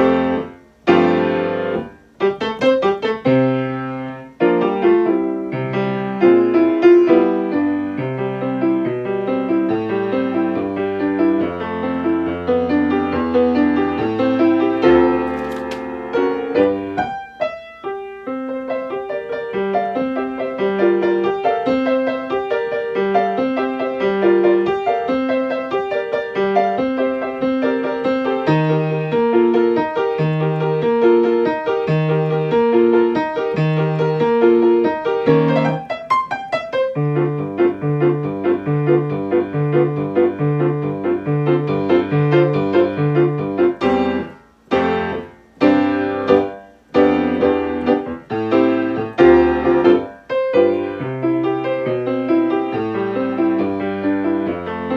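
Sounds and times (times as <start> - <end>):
grand piano playing: 25.4 - 54.9.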